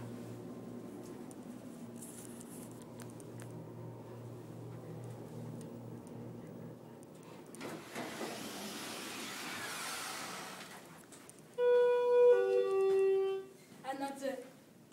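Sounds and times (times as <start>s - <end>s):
elevator arrival chime: 11.6s - 13.4s.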